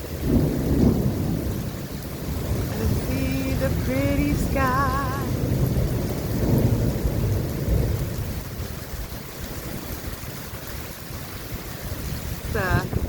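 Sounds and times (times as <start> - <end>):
thunder rumbling: 0.0 - 13.0.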